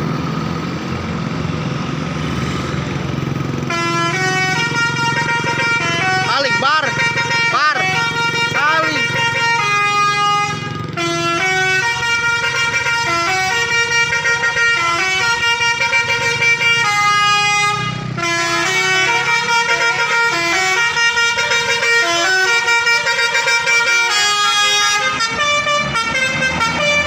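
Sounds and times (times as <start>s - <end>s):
bus horn playing a tune: 3.6s - 27.0s.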